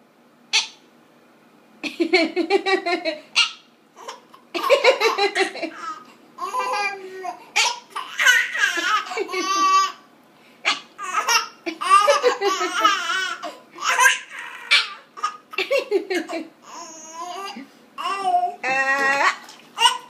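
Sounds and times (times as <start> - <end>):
baby laughing and giggling: 4.0 - 10.0, 10.7 - 18.6.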